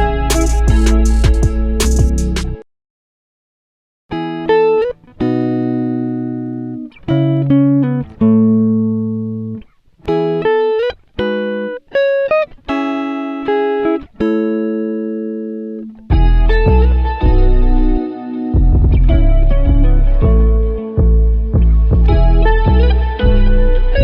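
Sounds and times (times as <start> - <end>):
held chords music: 0.0 - 2.6, 12.7 - 24.0.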